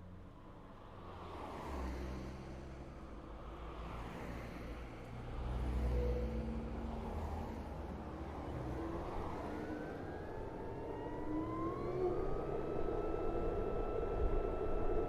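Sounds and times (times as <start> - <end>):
road traffic rumble: 0.0 - 12.5.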